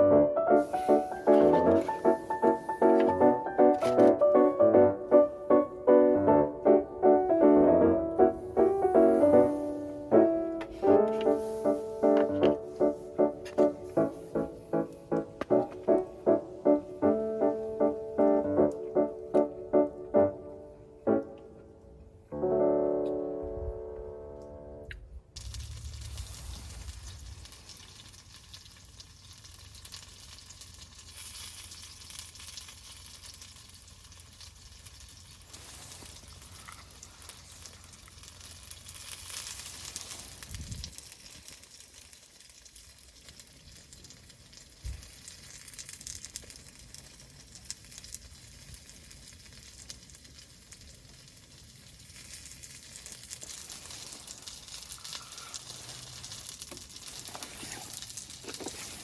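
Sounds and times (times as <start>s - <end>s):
food sizzling in a pan: 0.5s - 3.6s, 8.6s - 15.6s, 25.4s - 59.0s.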